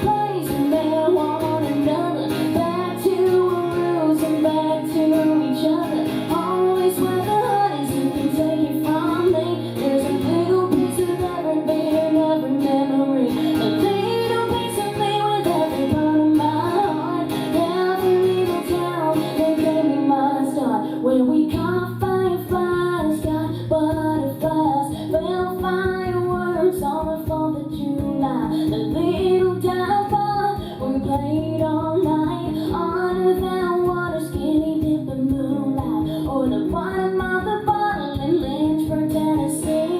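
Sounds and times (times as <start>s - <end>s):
guitar: 0.0s - 39.9s
woman singing: 0.0s - 39.9s.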